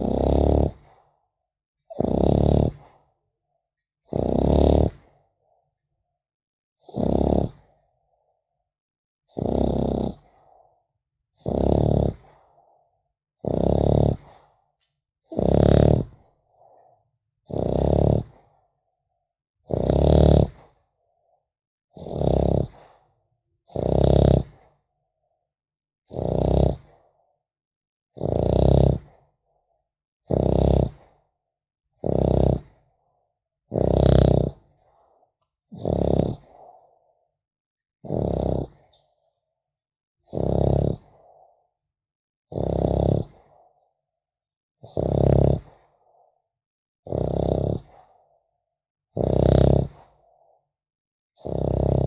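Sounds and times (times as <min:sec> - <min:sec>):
puppy snoring: 0:00.0 - 0:01.1, 0:01.9 - 0:03.1, 0:04.0 - 0:05.2, 0:06.8 - 0:07.9, 0:09.3 - 0:10.6, 0:11.4 - 0:12.6, 0:13.4 - 0:14.5, 0:15.3 - 0:18.6, 0:19.7 - 0:20.8, 0:22.0 - 0:23.1, 0:23.7 - 0:24.7, 0:26.1 - 0:27.1, 0:28.2 - 0:29.3, 0:30.2 - 0:31.2, 0:32.0 - 0:32.9, 0:33.7 - 0:36.9, 0:38.0 - 0:39.2, 0:40.2 - 0:41.5, 0:42.5 - 0:43.8, 0:44.8 - 0:46.1, 0:47.1 - 0:48.2, 0:49.1 - 0:50.4, 0:51.4 - 0:52.0.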